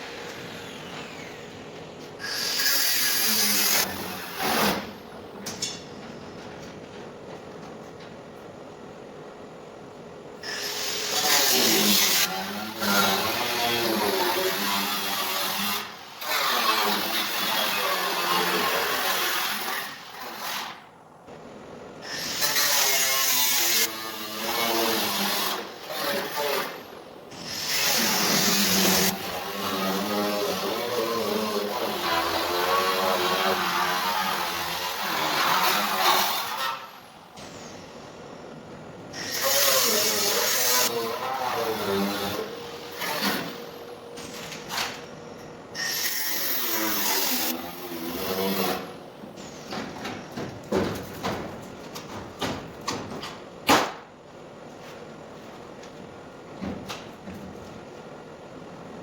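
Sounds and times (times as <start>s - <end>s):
power tool on sheet metal: 0.0s - 5.2s, 10.4s - 20.8s, 22.0s - 37.6s, 39.1s - 44.7s, 45.7s - 49.8s.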